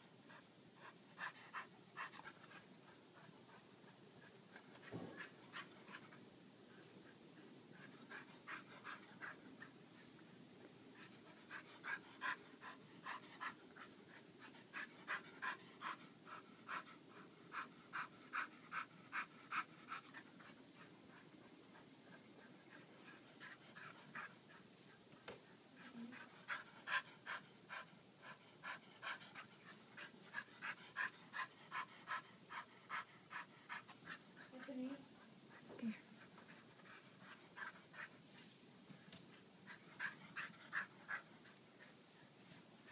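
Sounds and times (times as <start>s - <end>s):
puppy panting: 0.2s - 42.9s.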